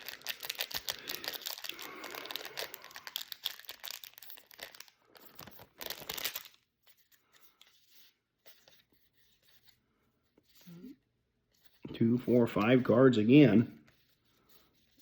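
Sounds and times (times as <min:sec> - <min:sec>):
card pack wrapper crinkling: 0:00.0 - 0:08.8.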